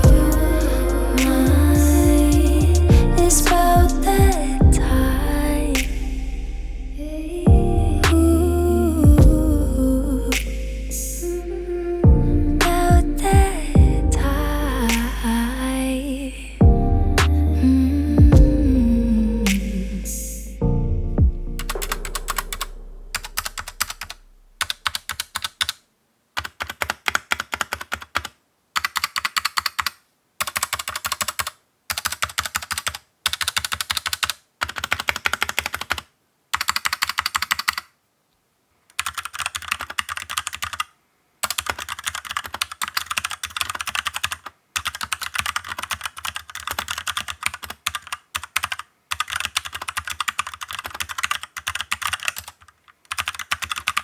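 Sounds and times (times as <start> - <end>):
mechanical keyboard typing clacks: 26.4 - 37.9, 38.9 - 54.0.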